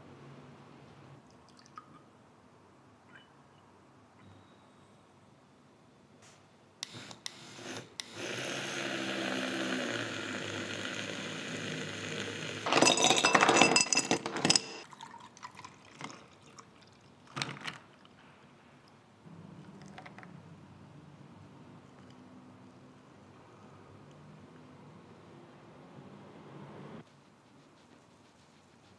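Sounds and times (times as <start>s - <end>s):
clinking and clattering: 12.7s - 14.8s
liquid poured into a glass: 14.8s - 17.4s.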